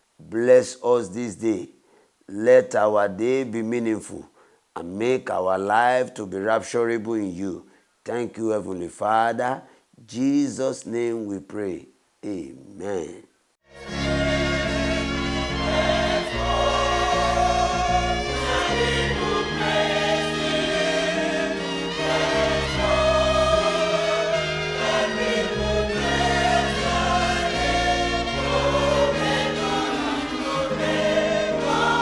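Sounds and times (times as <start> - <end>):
gospel choir singing: 13.7 - 32.0.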